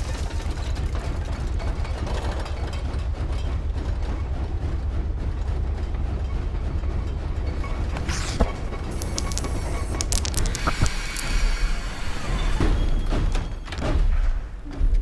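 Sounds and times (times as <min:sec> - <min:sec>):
fast rattling and clicking: 0:07.6 - 0:15.0.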